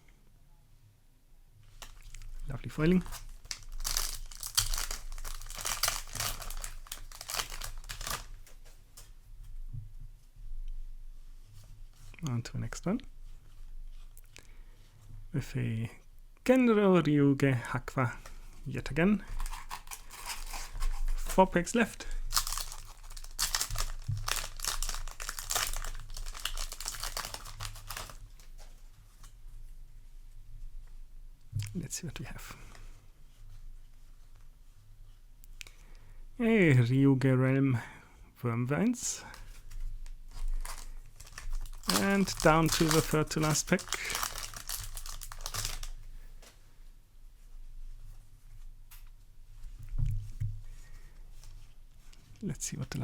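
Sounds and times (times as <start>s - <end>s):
foil wrapper crinkling and tearing: 1.7s - 9.1s, 19.2s - 28.6s, 39.1s - 46.1s.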